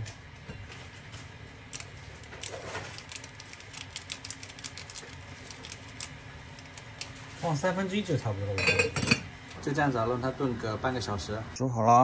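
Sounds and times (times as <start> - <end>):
dried berries pattering into pot: 1.6 - 8.0.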